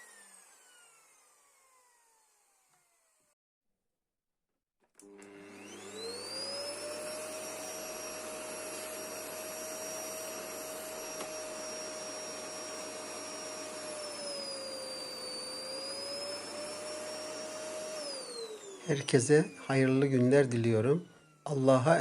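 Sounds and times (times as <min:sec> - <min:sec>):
vacuum cleaner motor whining: 0:00.0 - 0:03.4, 0:05.0 - 0:22.0
vacuum cleaner switch click: 0:05.0 - 0:05.7, 0:11.1 - 0:11.4.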